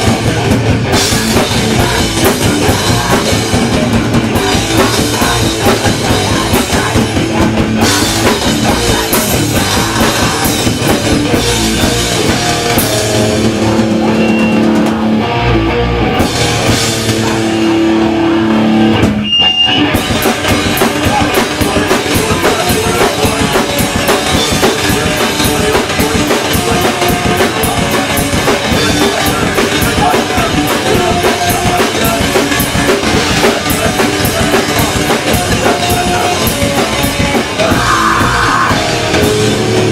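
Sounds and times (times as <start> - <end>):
distorted electric guitar chords: 0.0 - 39.9
drums: 0.0 - 39.9
hardcore band playing live: 0.0 - 39.9.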